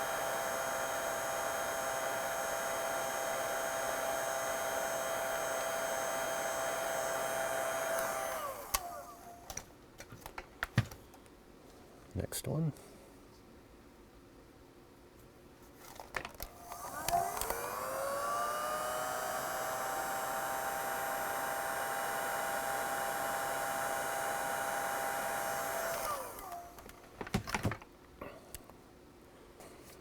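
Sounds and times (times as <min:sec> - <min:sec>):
heat gun fan whine: 0:00.0 - 0:09.7, 0:15.9 - 0:28.6.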